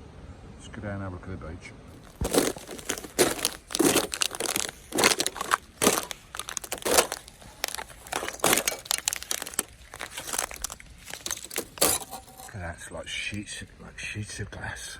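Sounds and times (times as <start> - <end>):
footsteps crunching on icy ground: 2.0 - 12.5.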